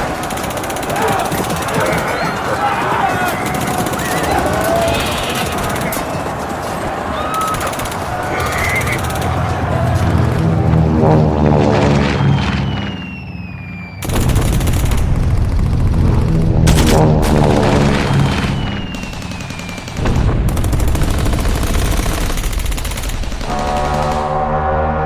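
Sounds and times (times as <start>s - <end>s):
falling whistle: 0.2s - 10.7s, 11.8s - 14.3s, 17.7s - 20.1s
machine-gun fire bursts: 16.7s - 24.2s.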